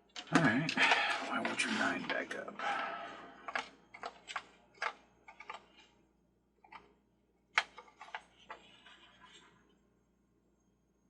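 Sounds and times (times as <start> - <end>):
plastic toy parts clicking: 3.5 - 5.9.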